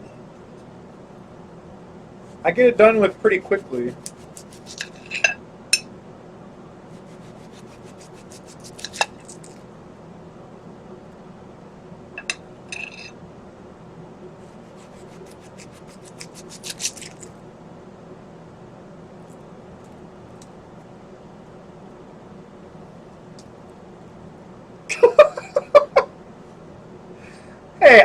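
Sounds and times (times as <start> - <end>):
knife slicing onion: 2.8 - 5.2, 6.9 - 9.6, 14.5 - 17.3.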